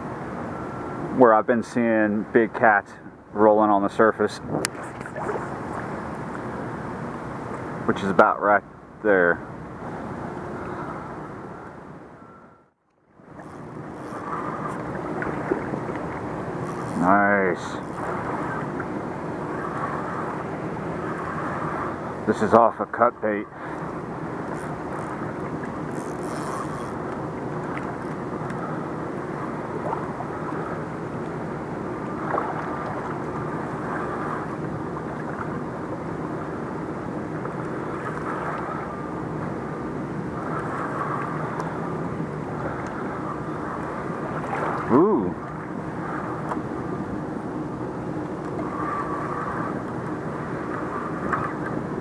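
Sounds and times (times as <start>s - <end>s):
water noise: 0.0s - 52.0s
wind: 0.0s - 52.0s
faint ticks: 41.2s - 41.8s.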